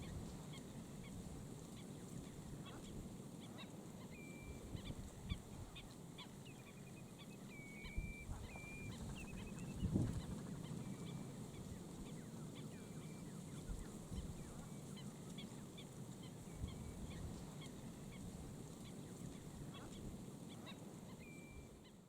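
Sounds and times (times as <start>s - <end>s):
thin bird whistles: 7.5s - 9.9s.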